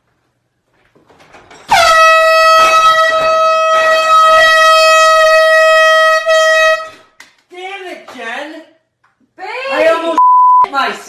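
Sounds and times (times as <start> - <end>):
air horn blast: 1.7 - 7.0.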